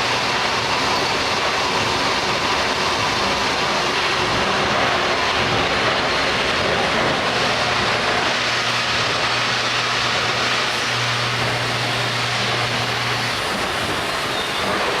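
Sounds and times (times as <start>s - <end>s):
lathe machine noise: 0.0s - 15.0s.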